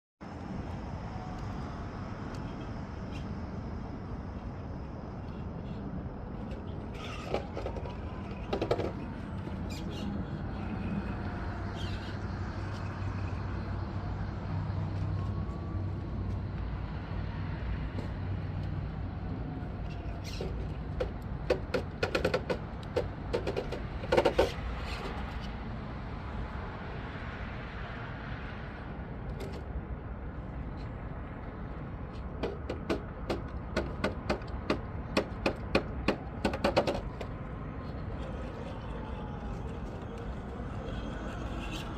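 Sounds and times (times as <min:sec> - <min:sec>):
rapid clicks and knocks: 0:20.4 - 0:24.6, 0:32.3 - 0:37.3.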